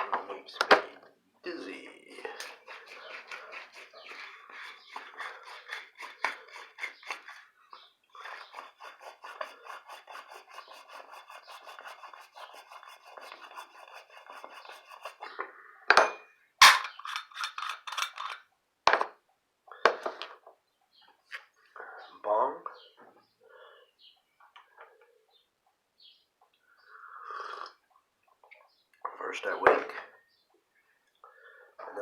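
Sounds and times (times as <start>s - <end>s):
rapid hand scraping: 2.1s - 15.4s.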